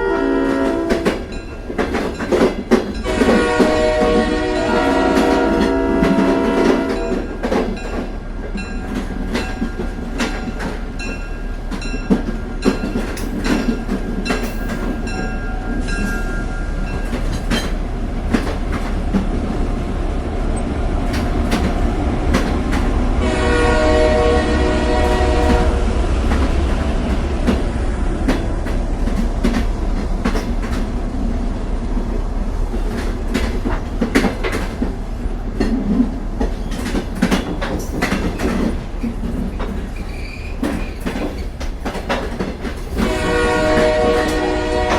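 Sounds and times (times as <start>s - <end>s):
train horn: 0.0s - 1.3s, 3.0s - 7.4s, 23.2s - 27.1s, 42.9s - 44.9s
train rumbling: 0.0s - 44.9s
wheels clicking over rail joints: 0.6s - 23.2s, 24.9s - 31.0s, 32.0s - 44.9s.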